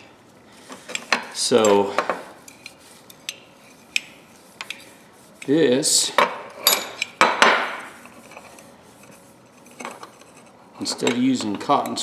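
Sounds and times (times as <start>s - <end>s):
tools clattering: 6.2s - 8.6s
metal tools clinking: 6.6s - 7.2s.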